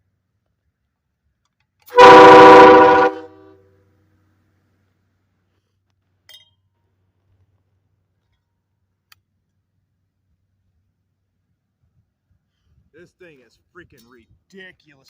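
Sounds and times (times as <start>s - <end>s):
loud air horn blast: 1.9s - 3.6s.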